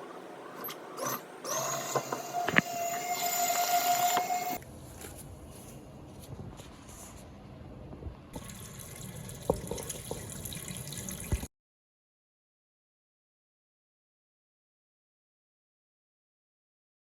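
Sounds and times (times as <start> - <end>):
washing machine motor whine: 0.0 - 4.6.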